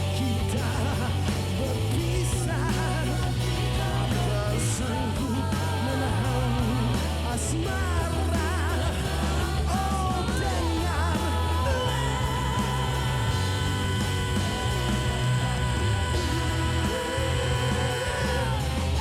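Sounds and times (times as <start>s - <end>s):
bending lead guitar melody: 0.0s - 19.0s
live rock band playing: 0.0s - 19.0s.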